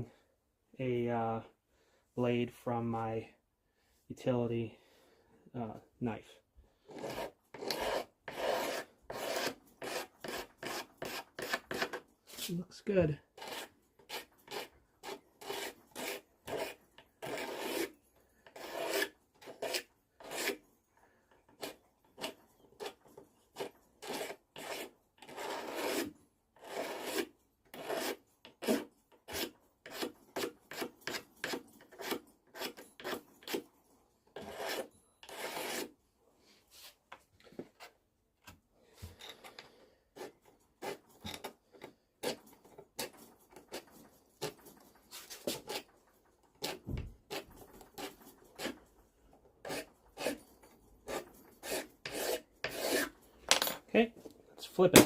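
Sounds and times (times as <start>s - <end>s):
knife blade scraping wood: 6.8s - 12.6s, 13.3s - 20.6s, 21.3s - 33.7s, 34.3s - 36.0s, 39.1s - 49.0s, 49.6s - 53.7s.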